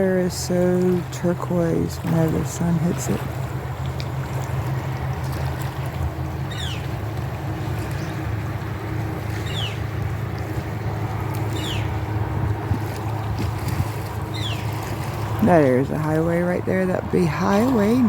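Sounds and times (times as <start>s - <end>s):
low rumble: 0.0s - 18.0s
bird whistling call: 9.4s - 9.8s.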